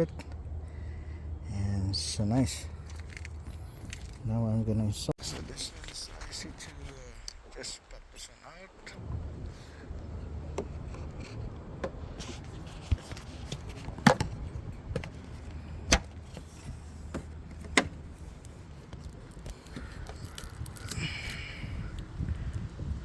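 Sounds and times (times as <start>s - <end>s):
low steady rumble: 0.0s - 23.0s.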